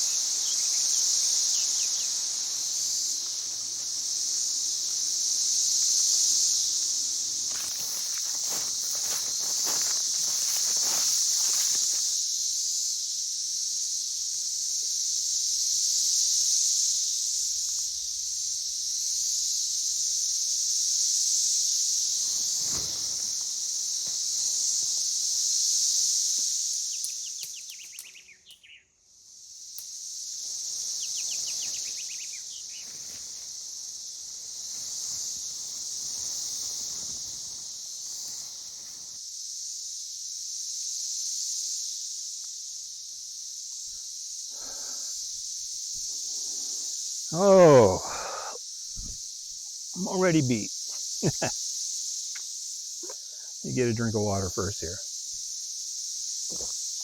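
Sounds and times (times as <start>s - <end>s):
insect chorus: 0.0s - 57.0s
faint bird chirps: 26.9s - 29.0s, 31.0s - 32.9s.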